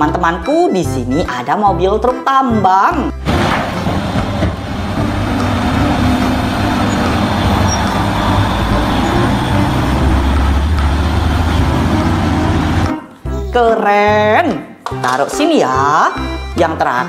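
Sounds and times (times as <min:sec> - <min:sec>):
heavy truck engine rumbling: 0:03.1 - 0:13.1.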